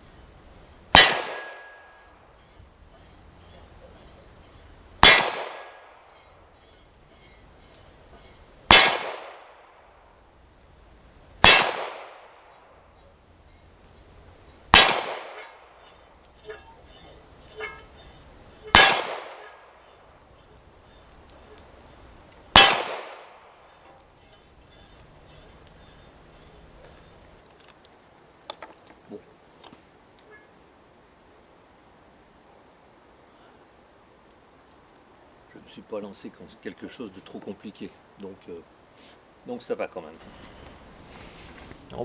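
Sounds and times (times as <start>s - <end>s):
pistol shots: 0.9s - 1.9s, 5.0s - 5.9s, 8.7s - 9.6s, 11.4s - 12.2s, 14.7s - 15.6s, 18.7s - 19.6s, 22.5s - 23.4s.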